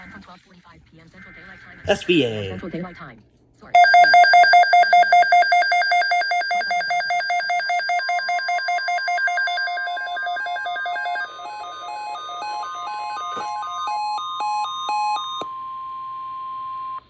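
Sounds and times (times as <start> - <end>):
steady high electronic tone: 3.8 - 11.4.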